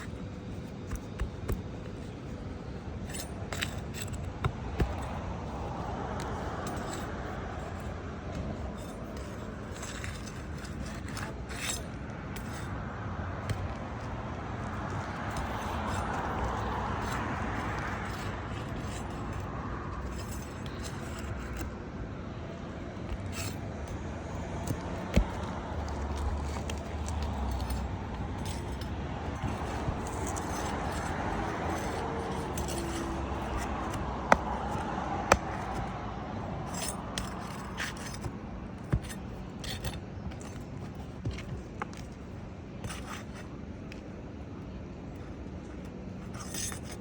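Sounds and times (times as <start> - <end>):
pry bar scraping shingles: 0.0 - 47.0.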